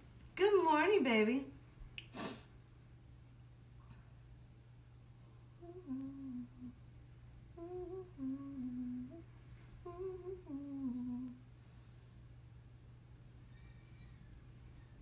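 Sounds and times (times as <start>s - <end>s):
low background hum: 0.0s - 15.0s
woman humming a tune: 5.5s - 6.8s, 7.5s - 11.4s.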